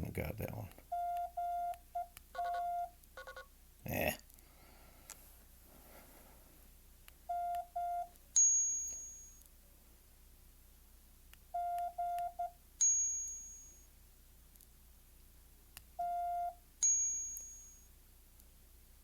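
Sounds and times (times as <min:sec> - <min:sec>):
morse code beeps: 0:00.9 - 0:03.5, 0:07.3 - 0:08.1, 0:11.6 - 0:12.5, 0:16.0 - 0:17.0
bright high chime: 0:08.4 - 0:09.4, 0:12.8 - 0:13.9, 0:16.8 - 0:17.9.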